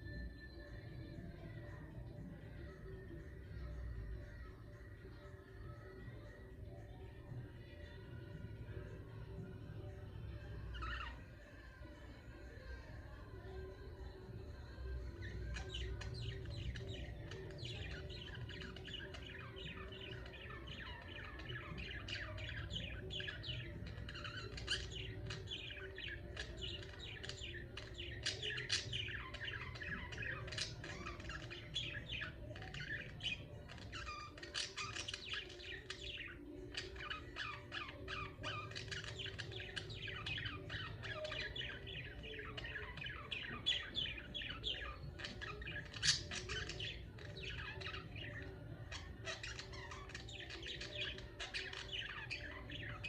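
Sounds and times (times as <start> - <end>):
budgerigars chirping: 36.8 - 53.0.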